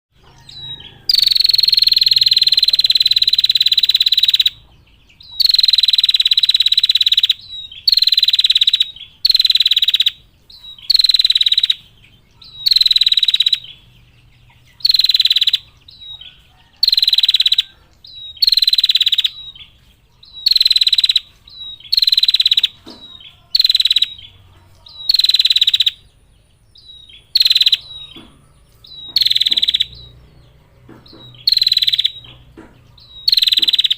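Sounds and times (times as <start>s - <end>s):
bird rattling trills: 5.4s - 11.8s, 14.7s - 26.1s, 26.9s - 30.2s, 31.1s - 33.9s.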